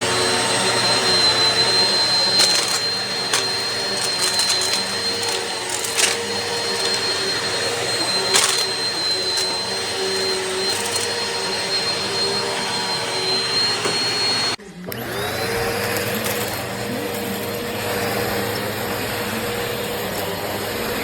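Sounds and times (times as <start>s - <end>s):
vacuum cleaner whining: 0.0s - 21.0s.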